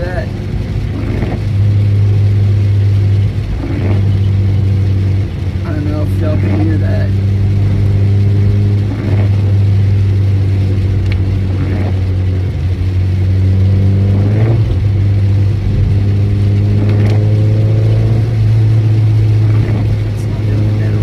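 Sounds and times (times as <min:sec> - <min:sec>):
car engine drone in cabin: 0:00.0 - 0:21.0.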